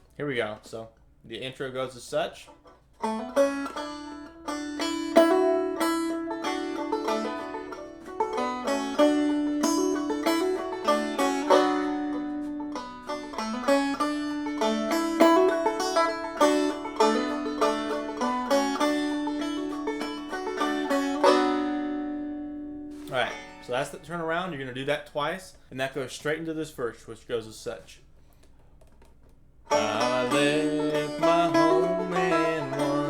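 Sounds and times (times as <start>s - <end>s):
banjo plucked notes: 2.5s - 24.5s, 29.7s - 33.0s.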